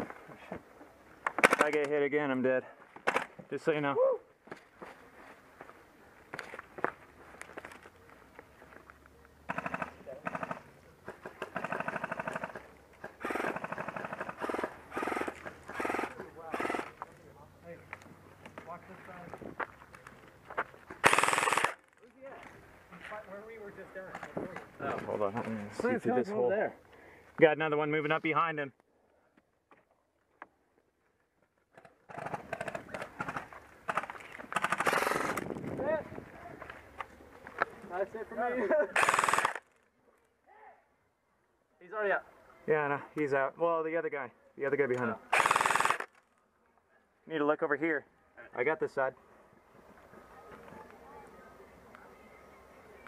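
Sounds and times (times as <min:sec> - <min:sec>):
electric airsoft gun firing: 0:09.5 - 0:16.9, 0:21.0 - 0:21.8, 0:32.1 - 0:35.5, 0:38.9 - 0:39.7, 0:45.3 - 0:46.1.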